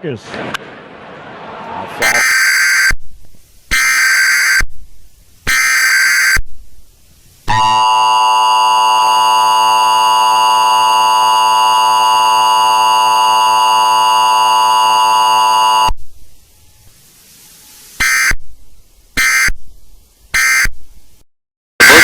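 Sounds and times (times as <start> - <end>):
two-tone alert tone: 7.5 - 15.9.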